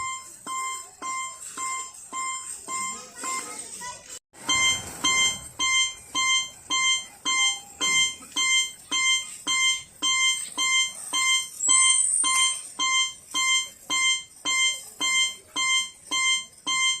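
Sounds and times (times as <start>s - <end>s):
crossing warning bell ringing: 4.4s - 17.0s
high squeal: 11.5s - 12.7s.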